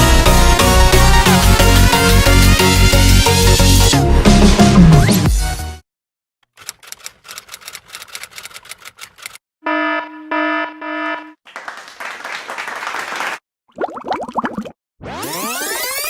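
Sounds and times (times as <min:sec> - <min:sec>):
quick irregular clicks: 0:06.4 - 0:09.4
loud electronic buzzer: 0:09.6 - 0:11.4.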